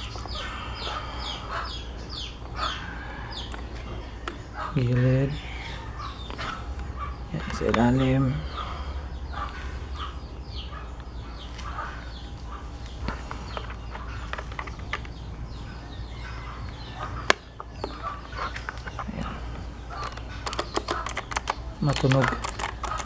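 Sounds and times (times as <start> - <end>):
birds clucking and chirping: 0.0 - 23.0
mechanical keyboard keys clicking: 20.0 - 23.0.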